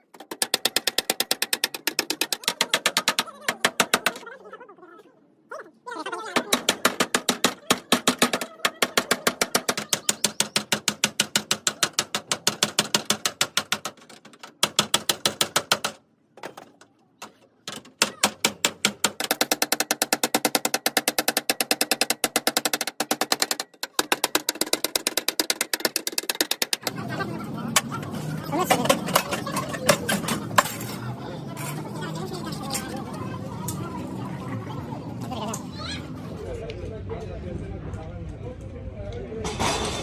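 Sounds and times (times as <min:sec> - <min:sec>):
fast percussive clicks: 0:18.2 - 0:27.0.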